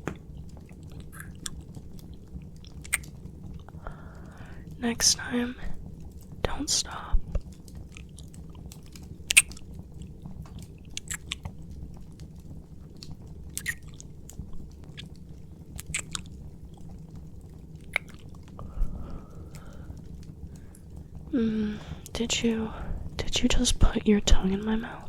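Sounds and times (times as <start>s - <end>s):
steady low hum: 0.0s - 25.0s
wet kissing sounds: 1.0s - 1.6s, 2.8s - 3.2s, 9.3s - 9.6s, 11.0s - 11.5s, 13.6s - 14.0s, 15.8s - 16.3s, 17.9s - 18.2s
soft breath: 3.7s - 4.8s, 18.6s - 23.2s.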